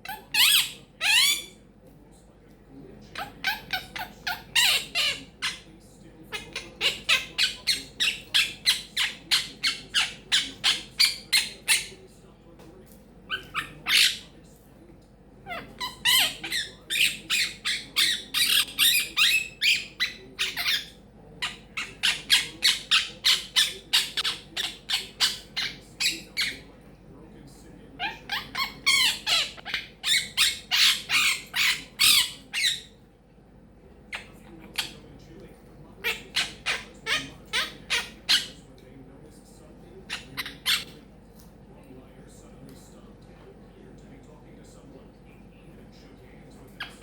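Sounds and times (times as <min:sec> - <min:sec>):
parrot squawking: 0:00.0 - 0:01.6, 0:03.1 - 0:05.7, 0:06.3 - 0:12.0, 0:13.3 - 0:14.4, 0:15.4 - 0:26.7, 0:28.0 - 0:33.0, 0:34.1 - 0:35.0, 0:36.0 - 0:38.6, 0:40.1 - 0:41.0, 0:46.8 - 0:47.0.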